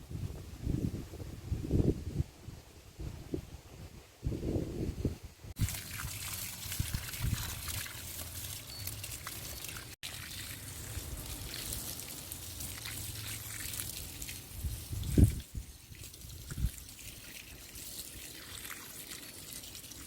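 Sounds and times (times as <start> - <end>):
water pouring and trickling: 5.6 - 20.0.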